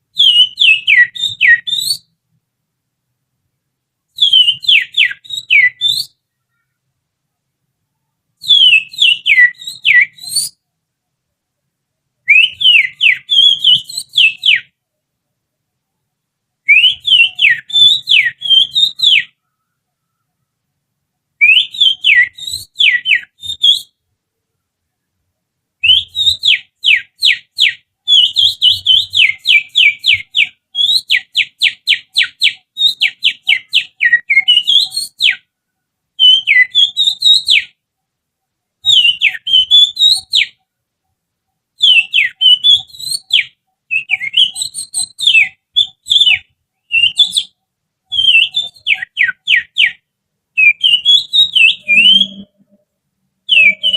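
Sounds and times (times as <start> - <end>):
finger whistle bird call: 0.2 - 2.1, 4.2 - 6.2, 8.4 - 10.6, 12.3 - 14.7, 16.7 - 19.4, 21.4 - 24.0, 25.8 - 35.5, 36.2 - 37.8, 38.8 - 40.6, 41.8 - 50.0, 50.6 - 52.8, 53.5 - 53.9.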